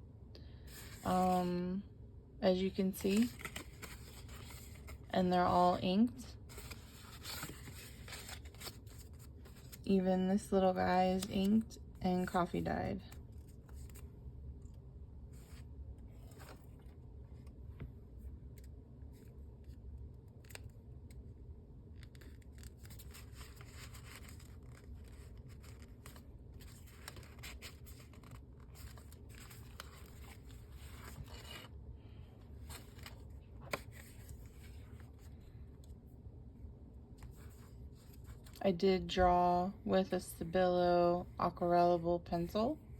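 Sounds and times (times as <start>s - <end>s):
paper pages rustling: 0.7s - 1.5s, 2.9s - 5.6s, 6.4s - 9.9s, 15.3s - 17.5s, 22.0s - 31.8s, 32.6s - 35.9s, 37.2s - 38.6s.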